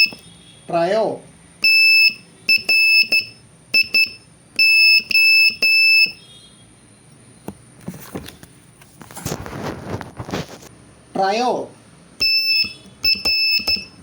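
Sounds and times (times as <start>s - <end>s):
morse code beeps: 0.0s - 0.4s, 1.6s - 6.4s, 12.2s - 14.0s.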